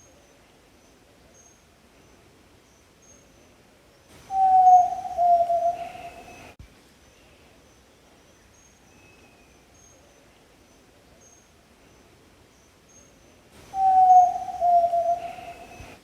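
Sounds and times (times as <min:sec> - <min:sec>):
bird low whistled note: 0:13.8 - 0:15.9.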